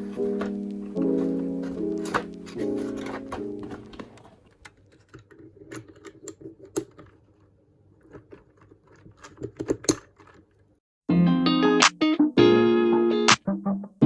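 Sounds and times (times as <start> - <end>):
mechanical keyboard key clacks: 8.0 - 10.6.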